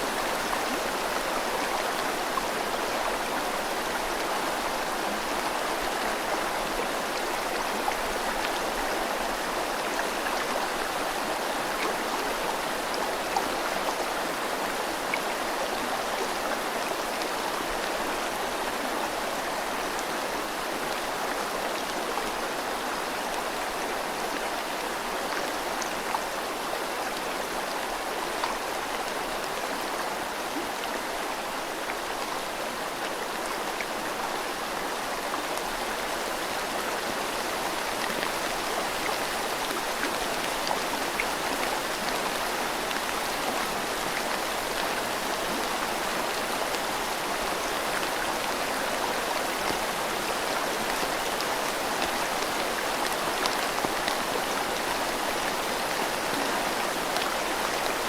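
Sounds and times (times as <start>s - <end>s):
river water flowing: 0.0s - 58.0s
rain falling: 16.6s - 58.0s.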